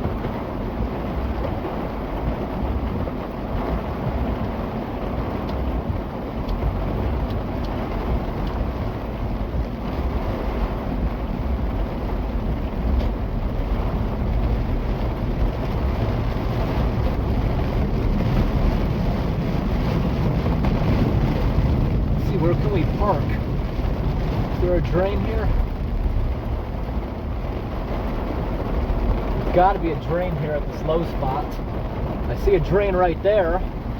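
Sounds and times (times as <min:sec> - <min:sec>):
rain hissing: 0:00.0 - 0:33.9
tyres and engine rumbling: 0:00.0 - 0:33.9.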